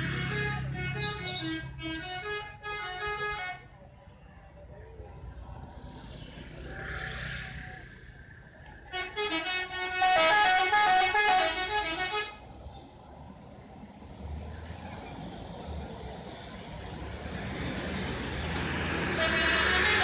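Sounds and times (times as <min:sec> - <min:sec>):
musical bus horn: 0:00.0 - 0:03.7, 0:08.9 - 0:12.4, 0:19.0 - 0:20.0
traffic noise: 0:00.0 - 0:20.0.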